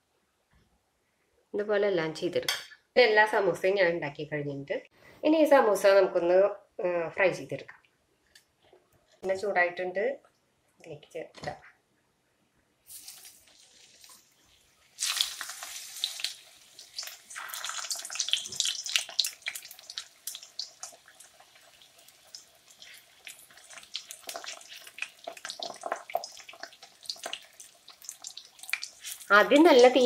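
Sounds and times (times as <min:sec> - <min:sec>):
food sizzling in hot oil: 0:12.8 - 0:30.0.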